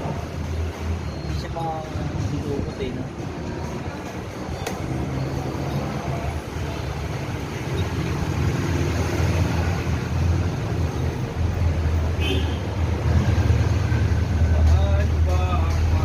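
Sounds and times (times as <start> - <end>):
motor vehicle engine rumble: 0.0 - 16.0.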